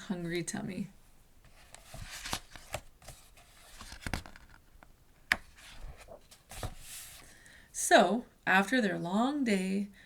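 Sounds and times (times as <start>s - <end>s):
paper page rustling: 1.4s - 7.3s.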